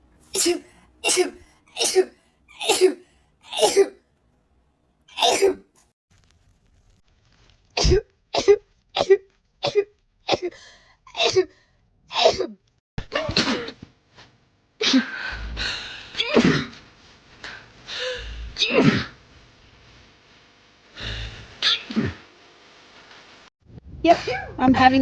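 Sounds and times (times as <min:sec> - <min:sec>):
person sneezing: 0:00.3 - 0:04.0, 0:05.2 - 0:05.7, 0:18.6 - 0:19.2, 0:21.0 - 0:22.2.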